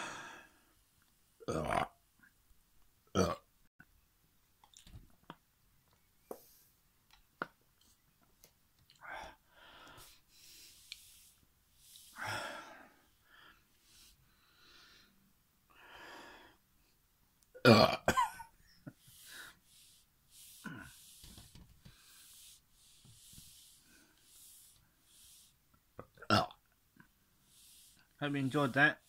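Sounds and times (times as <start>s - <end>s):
man belching: 1.4s - 2.0s, 3.1s - 3.5s, 17.6s - 18.2s, 26.1s - 26.6s
breaths and throat noises: 17.8s - 29.0s.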